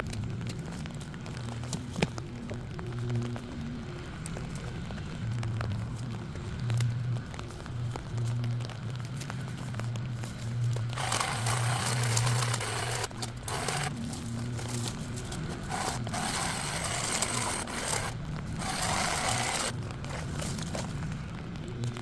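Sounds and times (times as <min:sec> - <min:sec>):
harsh cutting noise: 0:10.9 - 0:20.9
small engine yard tool running: 0:10.9 - 0:20.9.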